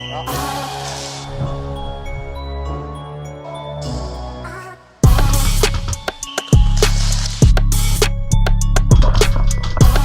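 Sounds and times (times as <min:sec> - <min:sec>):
steady bass: 0:06.6 - 0:10.0.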